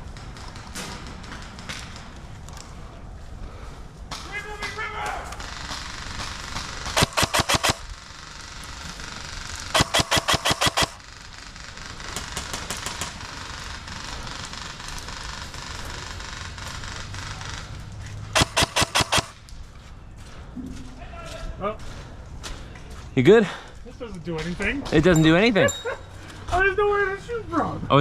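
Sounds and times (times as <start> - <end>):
airsoft guns firing: 5.4 - 19.4.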